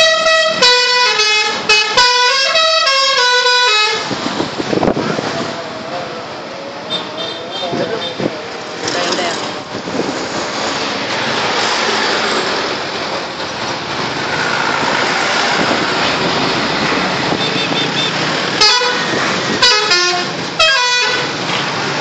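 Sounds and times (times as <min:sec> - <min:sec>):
musical air horn tune: 0:00.0 - 0:04.1, 0:17.5 - 0:19.0, 0:19.6 - 0:21.3
traffic and engine noise: 0:00.0 - 0:22.0.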